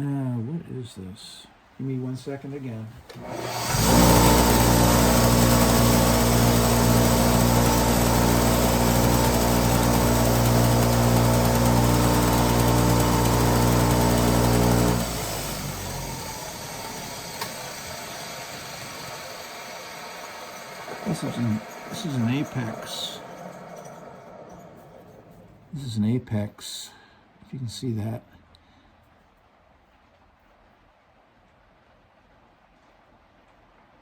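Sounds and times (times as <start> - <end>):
electric motor spinning wire brush: 3.2 - 25.5.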